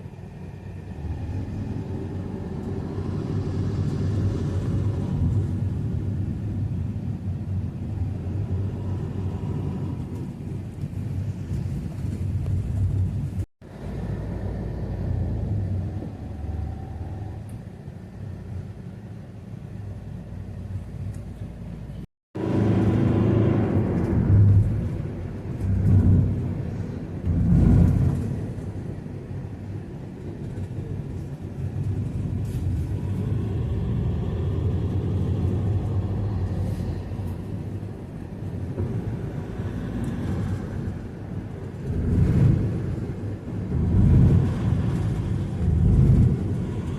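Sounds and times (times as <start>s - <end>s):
vehicle engine rumble: 0.0s - 46.9s.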